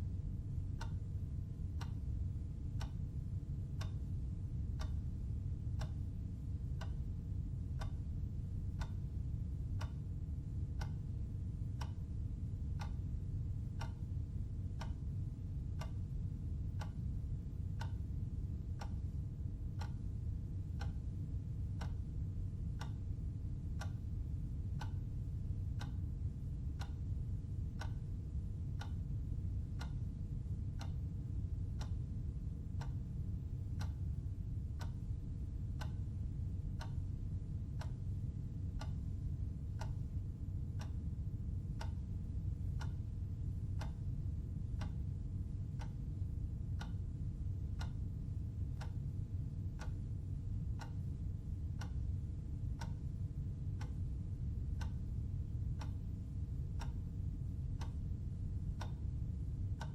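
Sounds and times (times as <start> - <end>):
low hum: 0.0 - 59.9
clock ticking: 1.7 - 2.1, 2.8 - 3.0, 3.8 - 4.2, 4.8 - 6.0, 6.7 - 7.1, 7.8 - 10.1, 10.7 - 12.0, 12.7 - 14.1, 14.7 - 15.2, 15.8 - 20.1, 20.7 - 22.1, 22.7 - 28.0, 28.7 - 32.1, 32.8 - 37.1, 37.7 - 45.1, 45.7 - 46.2, 46.8 - 47.0, 47.6 - 58.2, 58.8 - 59.2.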